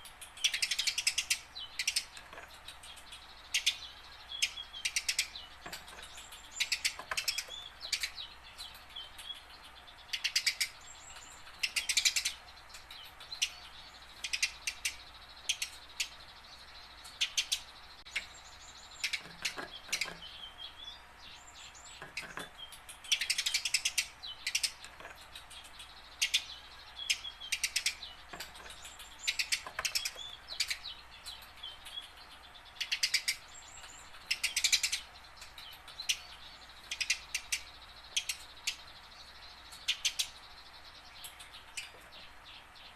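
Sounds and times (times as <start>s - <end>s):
sparrow chirping: 0.0s - 42.9s
thin whistled bird notes: 0.0s - 42.9s.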